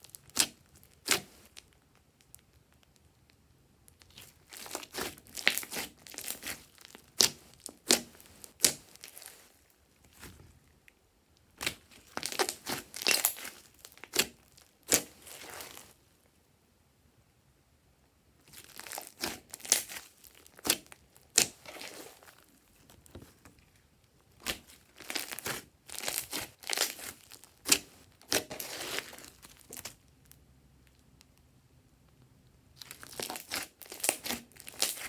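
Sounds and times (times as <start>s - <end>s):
slime squeezed crackling: 0.0s - 1.6s, 4.0s - 10.4s, 11.6s - 16.0s, 18.5s - 22.9s, 24.3s - 30.0s, 32.8s - 35.0s.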